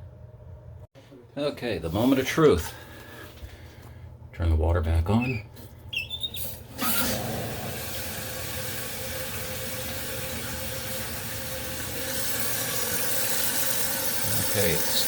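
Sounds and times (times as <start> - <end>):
toilet tank refilling: 6.6 - 15.0.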